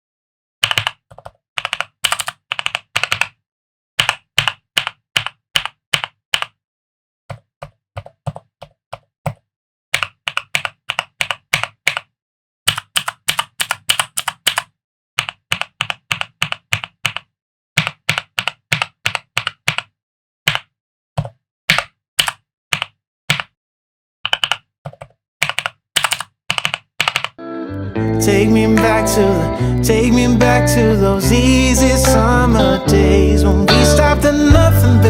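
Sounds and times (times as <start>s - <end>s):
mechanical keyboard typing: 0.6s - 3.4s, 4.0s - 6.6s, 10.0s - 12.1s, 12.7s - 23.6s, 24.3s - 27.4s.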